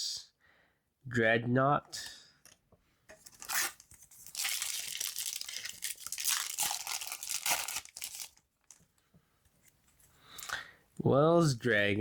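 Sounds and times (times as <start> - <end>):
foil wrapper crinkling and tearing: 3.3 - 8.8.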